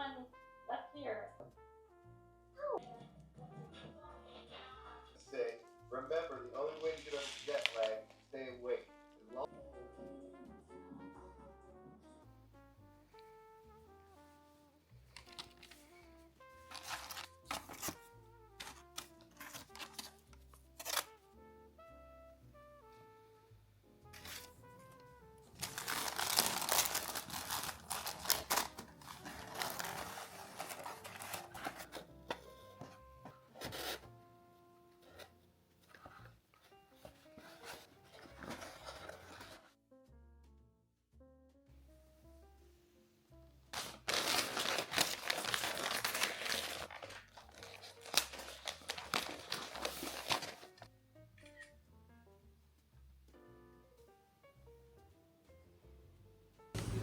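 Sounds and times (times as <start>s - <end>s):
soft background music: 0.0s - 57.0s
crinkling and rustling: 6.5s - 8.3s, 15.0s - 21.2s, 24.1s - 34.0s, 35.0s - 39.7s, 43.7s - 50.9s, 56.8s - 57.0s
packaging crumpling and tearing: 6.7s - 8.3s, 16.6s - 21.2s, 24.2s - 24.6s, 25.5s - 32.0s, 43.7s - 50.9s.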